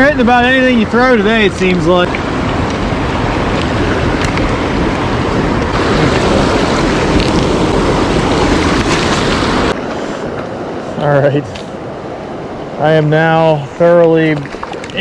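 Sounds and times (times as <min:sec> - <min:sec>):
fast-flowing creek rushing: 0:00.2 - 0:09.8.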